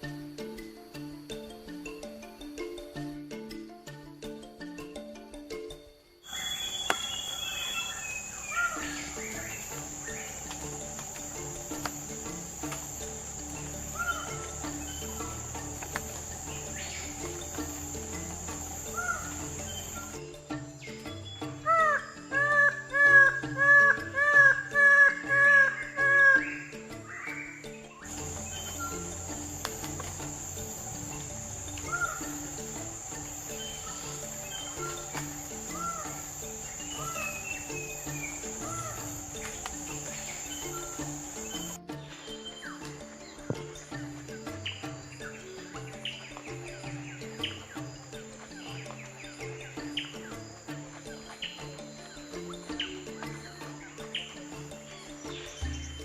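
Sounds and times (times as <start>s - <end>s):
high-pitched insect drone: 0.0s - 56.0s
bird calls: 6.2s - 56.0s.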